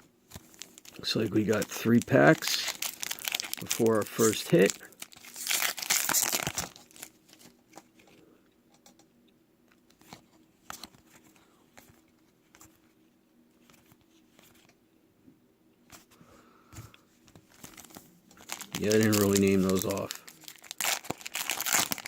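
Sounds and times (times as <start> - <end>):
cards rustling: 0.3 - 8.2, 17.2 - 22.0
foil wrapper tearing and crinkling: 0.4 - 7.2, 17.6 - 22.0.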